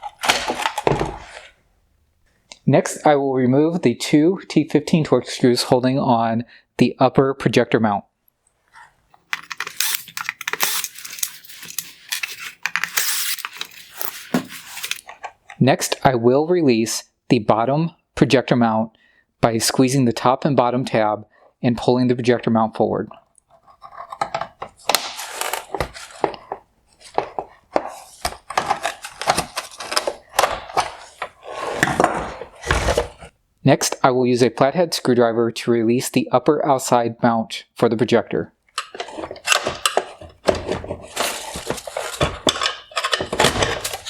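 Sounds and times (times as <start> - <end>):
plastic clicks and scraping: 8.8 - 15.6, 23.4 - 33.3, 38.7 - 44.0
screwdriver clicks and rattles: 9.3 - 15.0.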